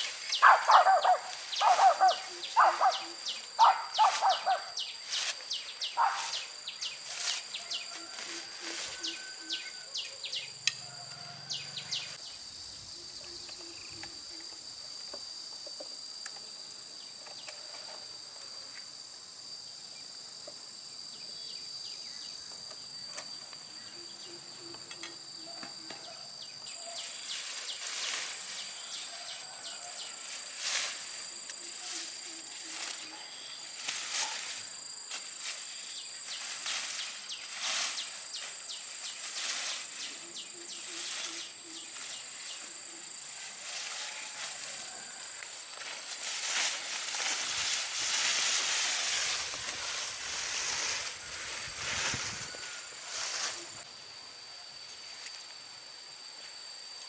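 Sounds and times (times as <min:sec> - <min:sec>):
insects droning: 0:00.0 - 0:57.0.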